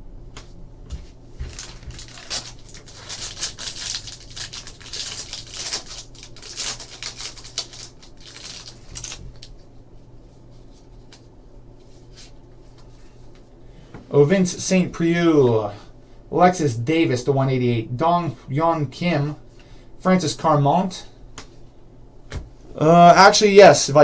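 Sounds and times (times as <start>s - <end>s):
cards rustling and clicking: 1.4s - 9.5s
wrapper crinkling and tearing: 1.4s - 9.6s.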